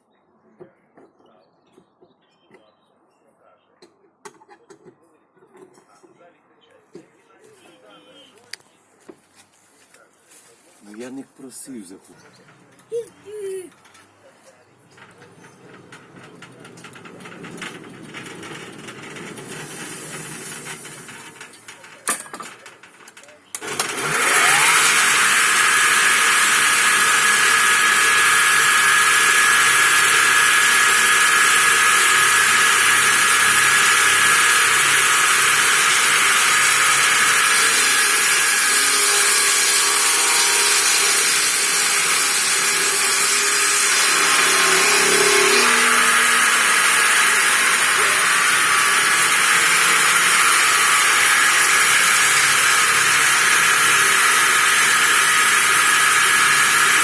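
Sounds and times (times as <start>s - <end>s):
sawmill hissing and whining: 15.0s - 22.6s, 23.6s - 57.0s.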